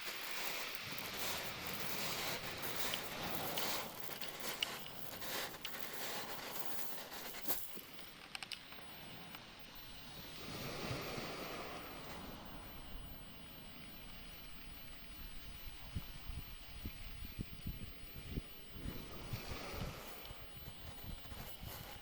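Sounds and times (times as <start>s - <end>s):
ocean waves washing in: 10.1s - 13.0s.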